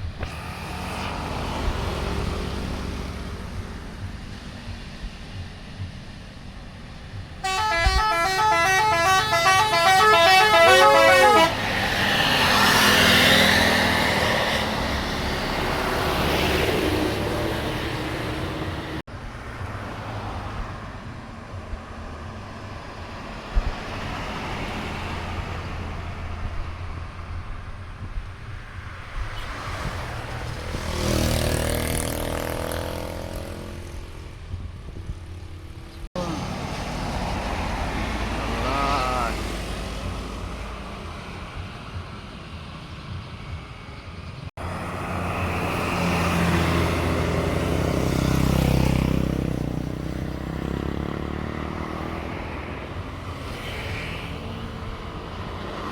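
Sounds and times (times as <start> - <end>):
traffic engine and road noise: 0.0 - 55.9
bus multi-tone horn: 7.4 - 12.0
engine revving: 7.4 - 19.0, 29.9 - 34.4, 44.6 - 52.6.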